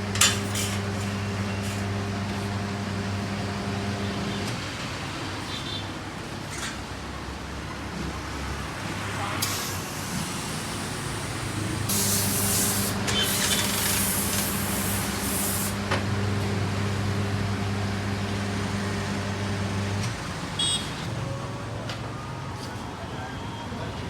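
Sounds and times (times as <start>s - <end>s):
air compressor motor humming: 0.0s - 4.5s, 11.9s - 20.8s
compressed air hissing blasts: 11.9s - 15.8s.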